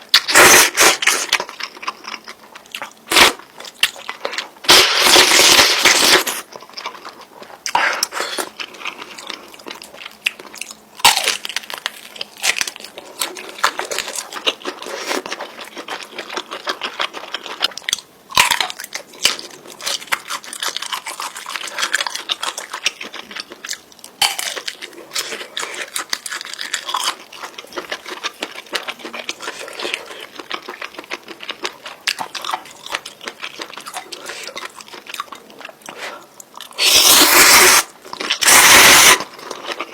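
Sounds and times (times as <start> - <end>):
chewing noodles: 0.2 - 39.9.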